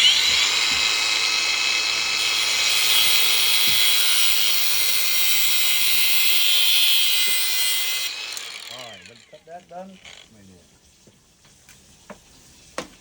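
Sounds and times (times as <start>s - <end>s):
grinder cutting hose: 0.0s - 10.3s.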